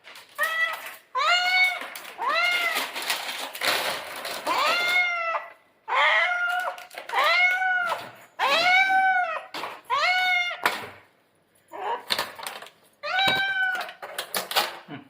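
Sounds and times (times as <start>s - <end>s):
cat meowing loudly: 0.4s - 3.0s, 4.4s - 10.9s, 13.0s - 14.0s.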